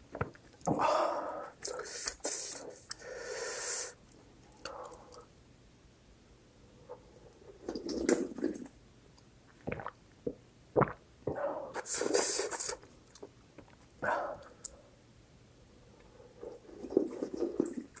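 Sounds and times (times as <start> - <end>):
noodle slurping: 11.8 - 12.9.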